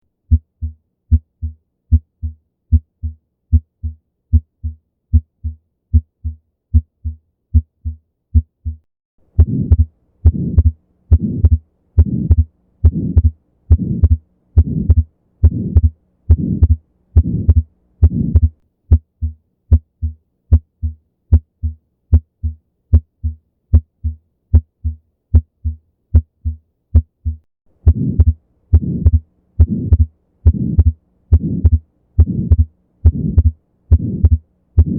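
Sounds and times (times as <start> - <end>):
heartbeat lub-dub: 0.3 - 34.9
heart murmur: 9.4 - 34.9.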